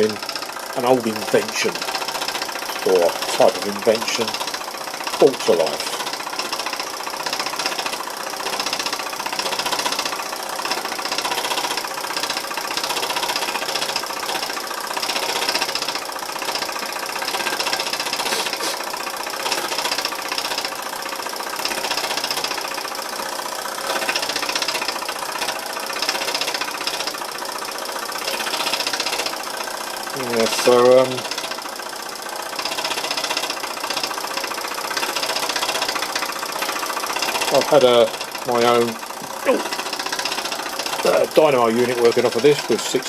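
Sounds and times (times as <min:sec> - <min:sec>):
steam engine chuffing: 0:00.0 - 0:43.0
steam hissing: 0:18.1 - 0:18.9.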